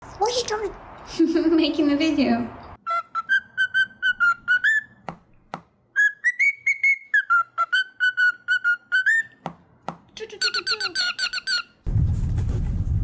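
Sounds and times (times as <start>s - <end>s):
parrot whistling chirps: 2.8s - 5.0s, 6.0s - 9.4s, 10.4s - 11.8s.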